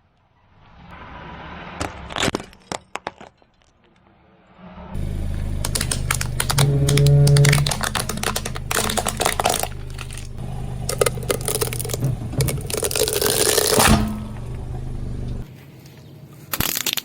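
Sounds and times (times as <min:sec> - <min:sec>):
car running: 0:04.9 - 0:15.5
tyre crushing objects: 0:05.2 - 0:14.6.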